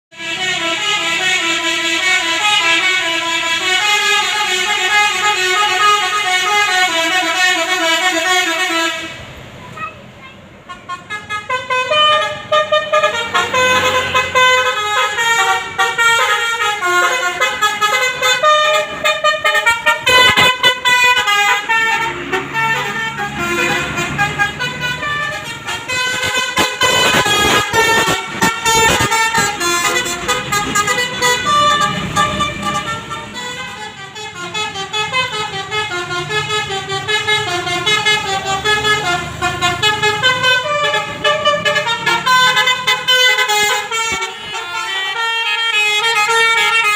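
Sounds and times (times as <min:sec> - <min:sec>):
musical bus horn tune: 0:00.1 - 0:46.9.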